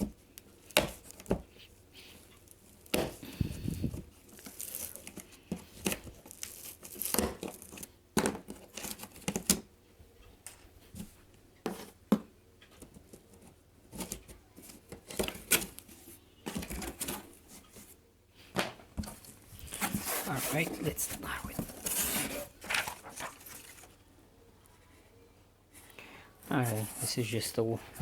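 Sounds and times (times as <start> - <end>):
cardboard and plastic crinkling: 2.5 - 9.6, 18.6 - 24.0.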